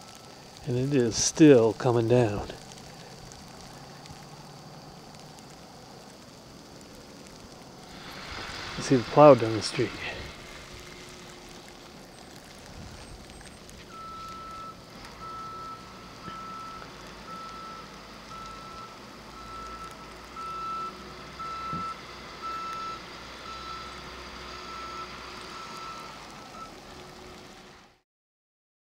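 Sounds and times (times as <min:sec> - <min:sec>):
truck engine rumble: 0:00.0 - 0:28.0
reversing alarm beeping: 0:13.9 - 0:26.8.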